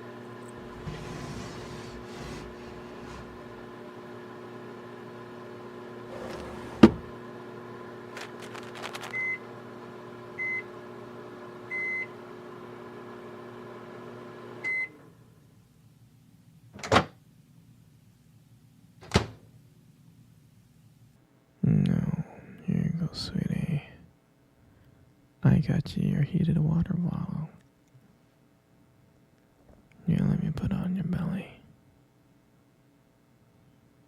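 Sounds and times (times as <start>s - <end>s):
microwave oven humming: 0.0s - 24.2s
microwave short beeps: 9.1s - 9.5s, 10.4s - 10.7s, 11.7s - 12.2s, 14.6s - 15.0s.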